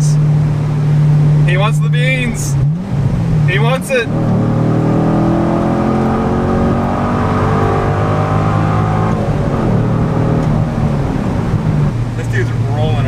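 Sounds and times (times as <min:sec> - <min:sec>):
car engine revving loudly: 0:00.0 - 0:13.0.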